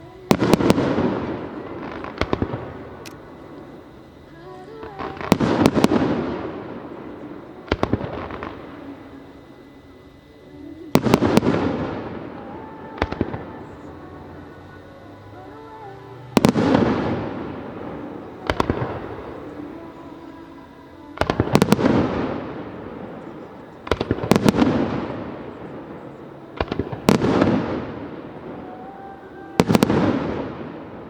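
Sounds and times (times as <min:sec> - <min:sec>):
sharp firework crack: 0:00.3 - 0:03.2, 0:23.8 - 0:25.5, 0:29.6 - 0:31.0
firework shells booming: 0:00.3 - 0:03.4, 0:16.4 - 0:19.6, 0:21.2 - 0:26.0, 0:26.6 - 0:28.7, 0:29.6 - 0:31.0.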